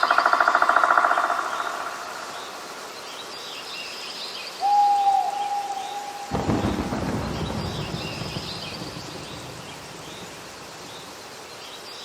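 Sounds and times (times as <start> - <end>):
long whistled bird call: 4.6 - 11.1.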